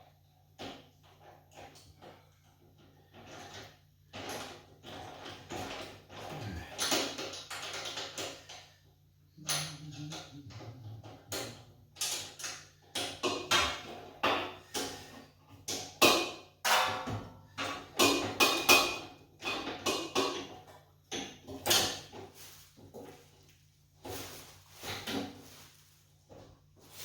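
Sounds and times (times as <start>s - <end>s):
tools clanking on steel frame: 9.5s - 22.4s.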